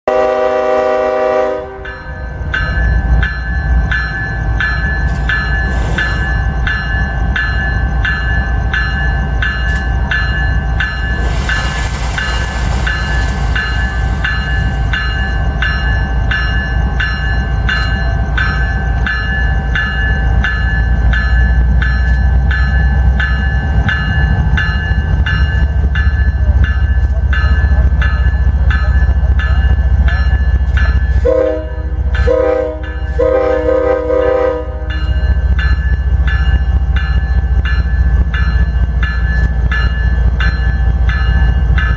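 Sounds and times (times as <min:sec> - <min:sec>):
locomotive air horn chord: 0:00.0 - 0:01.9, 0:31.2 - 0:34.9
locomotive rumble: 0:00.1 - 0:41.9
locomotive bell ringing: 0:00.8 - 0:41.9
air hiss: 0:05.6 - 0:06.4, 0:11.0 - 0:15.4.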